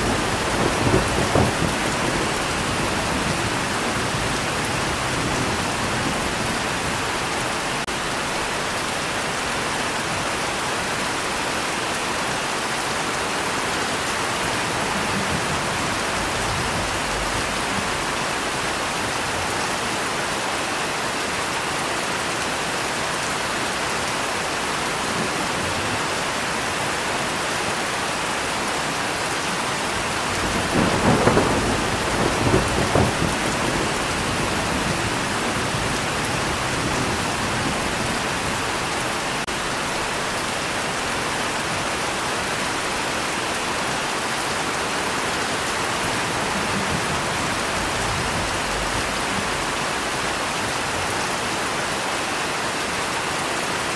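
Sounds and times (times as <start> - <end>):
thunder rumbling: 0.0 - 8.1, 14.2 - 19.2, 29.8 - 40.2, 45.4 - 50.4
heavy rain falling: 0.0 - 53.9.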